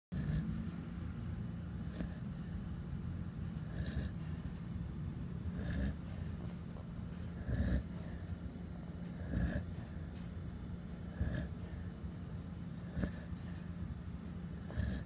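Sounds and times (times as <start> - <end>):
person snoring: 3.6 - 4.2, 5.5 - 6.0, 7.4 - 7.9, 9.1 - 9.9, 11.0 - 11.6, 12.8 - 13.3, 14.6 - 15.0.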